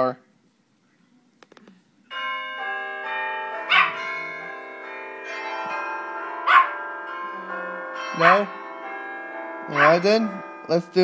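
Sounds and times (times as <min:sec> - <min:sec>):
church bells pealing: 0:02.1 - 0:11.0.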